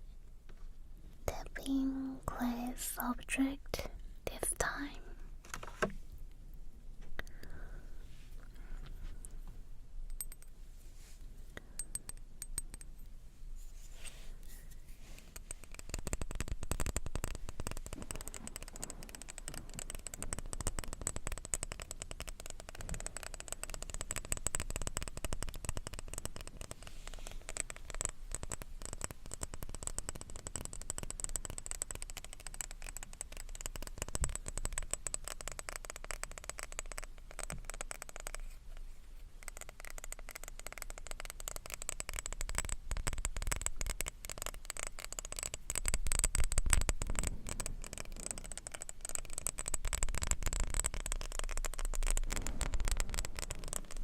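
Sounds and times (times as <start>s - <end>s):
tapping and scratching on glass: 14.5s - 54.0s.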